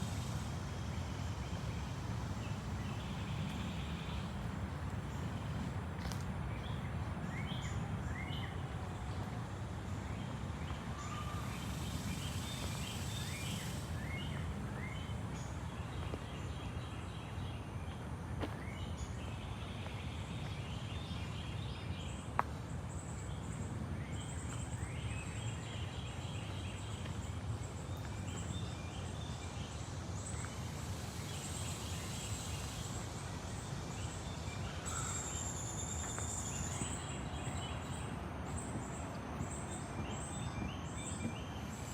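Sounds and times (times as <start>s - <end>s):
steady low rumble: 0.0s - 15.7s
small birds chirping: 0.0s - 17.4s, 22.9s - 41.9s.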